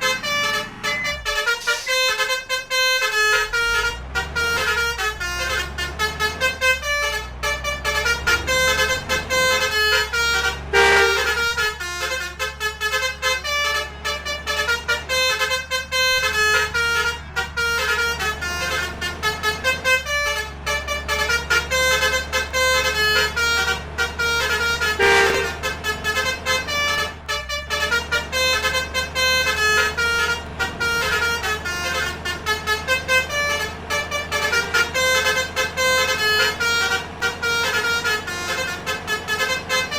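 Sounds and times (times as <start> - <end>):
low engine hum: 0.0 - 39.9
multi-tone vehicle horn melody: 0.0 - 39.9.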